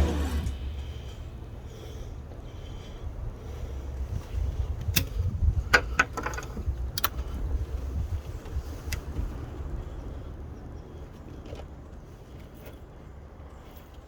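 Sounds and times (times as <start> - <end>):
steady low rumble: 0.0 - 12.4.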